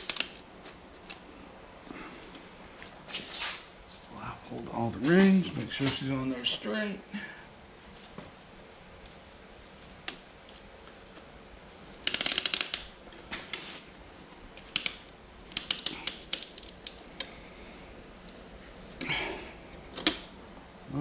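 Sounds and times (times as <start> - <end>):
ratchet clicking: 0.0 - 0.4, 11.9 - 13.0, 14.6 - 17.0.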